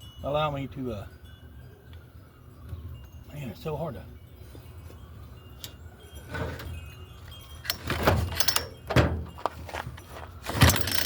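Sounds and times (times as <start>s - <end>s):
chainsaw starter rope pulls: 10.5s - 11.0s.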